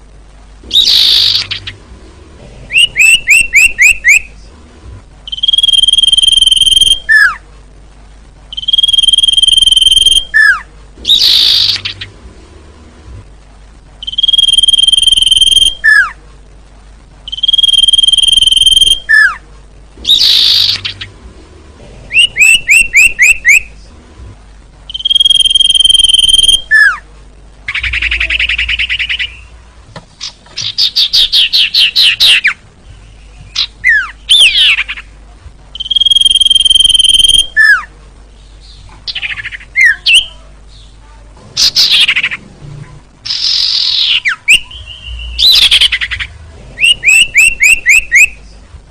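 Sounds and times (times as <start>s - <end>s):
sharp bird chirps: 0.6s - 1.8s, 2.7s - 4.3s, 5.3s - 7.4s, 8.5s - 12.2s, 14.0s - 16.2s, 17.3s - 19.4s, 20.0s - 21.2s, 22.1s - 23.7s, 24.9s - 27.0s, 35.8s - 37.9s, 43.2s - 48.4s
harsh buzzy bird notes: 0.6s - 4.4s, 8.5s - 13.0s, 20.0s - 23.9s, 43.2s - 48.5s
bird whistles: 0.7s - 1.7s, 2.7s - 4.3s, 5.3s - 7.4s, 8.5s - 12.0s, 14.0s - 16.2s, 17.3s - 19.4s, 22.1s - 23.7s, 24.9s - 27.0s, 35.8s - 37.9s, 43.3s - 46.2s, 46.8s - 48.4s.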